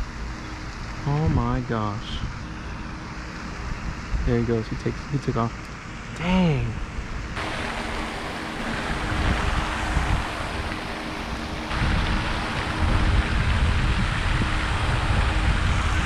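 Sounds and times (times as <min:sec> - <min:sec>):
faint hum: 0:00.0 - 0:16.0
steady outdoor noise: 0:00.0 - 0:16.0
wind buffeting microphone: 0:07.4 - 0:16.0.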